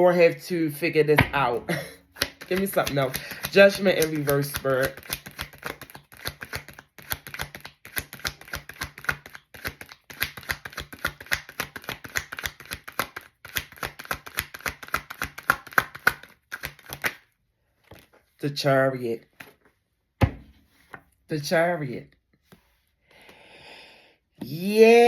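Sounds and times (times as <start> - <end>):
cards being shuffled: 2.2 - 18.2.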